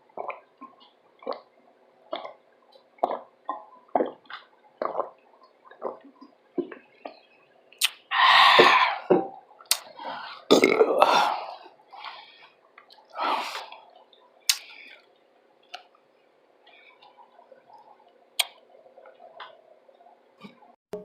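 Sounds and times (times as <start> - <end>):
soft mouth sounds: 0.2 - 7.2, 7.8 - 11.1, 14.5 - 15.0
person burping: 10.5 - 11.5.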